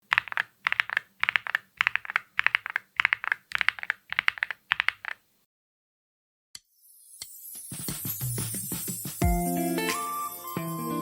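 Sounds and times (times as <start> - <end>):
mechanical keyboard typing: 0.0 - 5.2.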